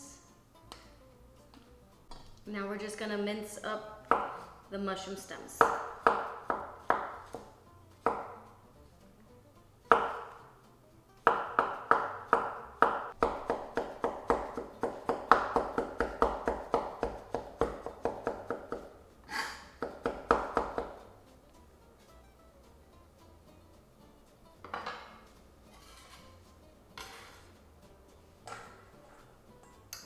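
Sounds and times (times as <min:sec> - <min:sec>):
knife chopping on cutting board: 0:04.1 - 0:04.5, 0:05.6 - 0:08.5, 0:09.9 - 0:10.4, 0:11.3 - 0:21.1, 0:27.0 - 0:27.4.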